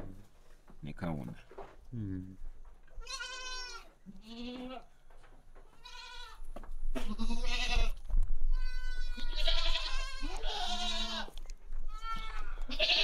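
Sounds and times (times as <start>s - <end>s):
goats bleating: 3.0s - 4.9s, 5.7s - 6.4s, 7.0s - 13.0s.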